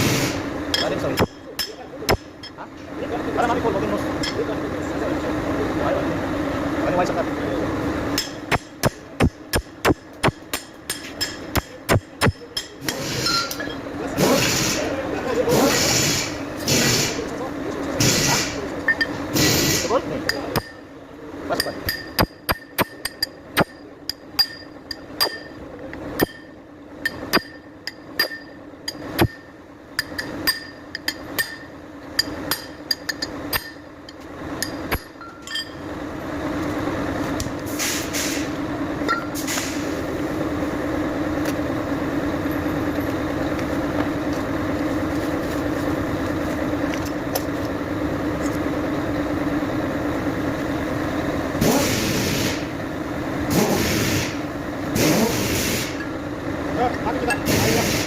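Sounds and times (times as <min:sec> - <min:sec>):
vehicle engine running: 0:00.0 - 0:58.0
hammer striking metal: 0:00.7 - 0:02.6, 0:08.2 - 0:13.8, 0:20.3 - 0:20.8, 0:21.6 - 0:25.6, 0:26.2 - 0:33.9.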